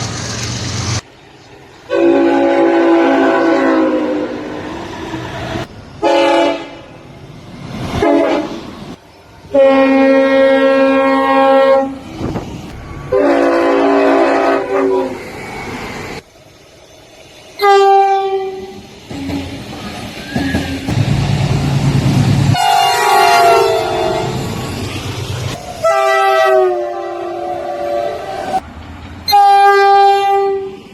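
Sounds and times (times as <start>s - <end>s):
train horn blasts: 1.9s - 4.6s, 6.0s - 6.9s, 8.0s - 8.6s, 9.5s - 12.0s, 13.1s - 15.2s, 17.6s - 19.4s, 22.5s - 24.4s, 25.8s - 28.6s, 29.3s - 30.8s.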